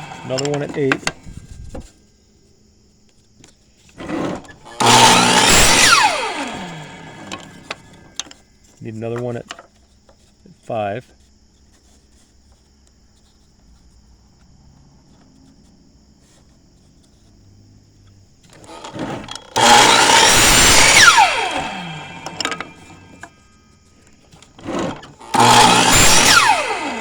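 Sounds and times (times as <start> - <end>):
electric power saw cutting wood: 0.0 - 1.2, 4.0 - 8.2, 18.5 - 23.4, 24.3 - 27.0
saw blade winding down: 0.0 - 1.2, 4.0 - 8.2, 18.6 - 23.4, 24.6 - 27.0.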